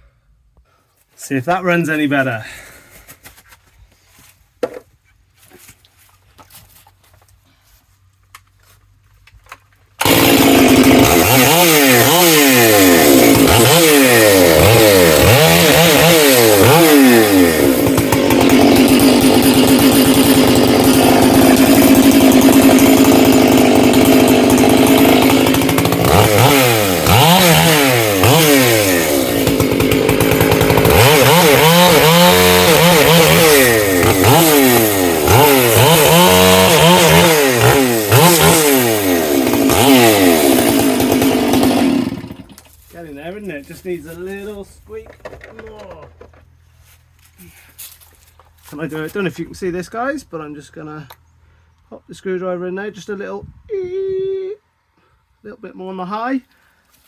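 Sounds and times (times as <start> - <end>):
chainsaw revving: 10.0 - 44.6.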